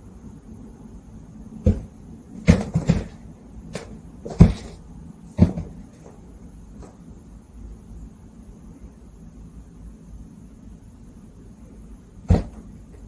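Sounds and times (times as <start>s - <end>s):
short irregular thumps and knocks: 1.6s - 4.8s, 5.4s - 7.0s, 12.3s - 13.0s.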